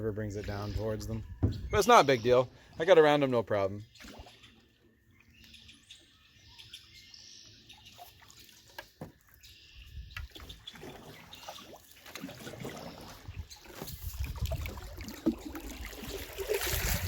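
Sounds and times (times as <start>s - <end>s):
paddle splashes and knocks: 8.0s - 9.4s, 10.1s - 17.0s
water dripping off paddle: 10.1s - 16.9s.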